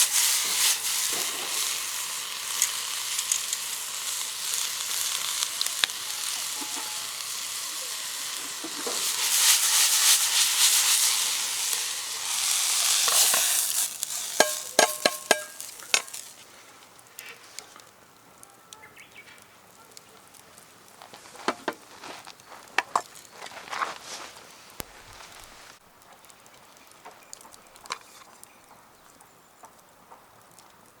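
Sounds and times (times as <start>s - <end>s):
food sizzling in a wok: 0.0s - 16.6s.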